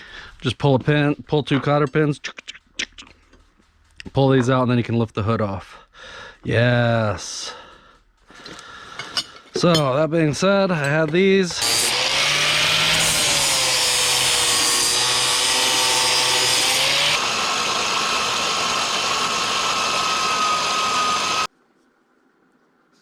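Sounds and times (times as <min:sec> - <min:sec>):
electric power tool running: 0:11.5 - 0:21.5.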